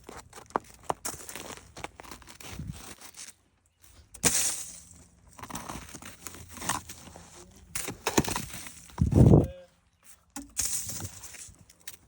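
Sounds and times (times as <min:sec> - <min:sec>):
footsteps crunching on icy snow: 0:00.0 - 0:07.6.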